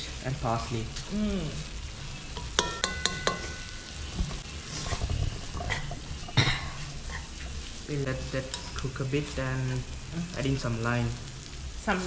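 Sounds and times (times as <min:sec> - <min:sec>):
food sizzling in a pan: 0:00.0 - 0:12.0
metal utensil clinking on pan: 0:02.4 - 0:08.8.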